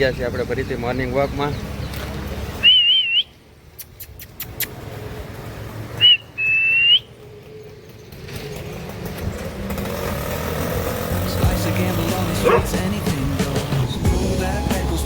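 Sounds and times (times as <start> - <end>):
person whistling: 2.6 - 3.3, 6.0 - 7.1
sharp clicks: 3.7 - 4.8.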